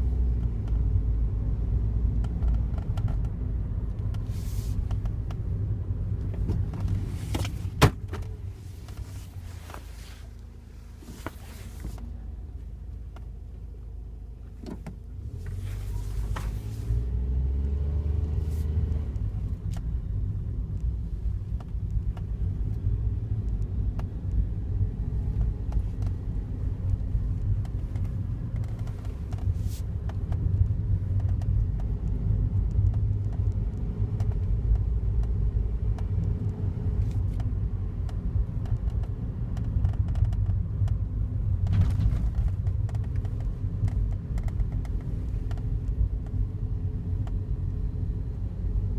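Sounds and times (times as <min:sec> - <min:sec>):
car engine rumbling: 0:00.0 - 0:48.9
light ticks: 0:20.7 - 0:24.4, 0:26.8 - 0:41.7.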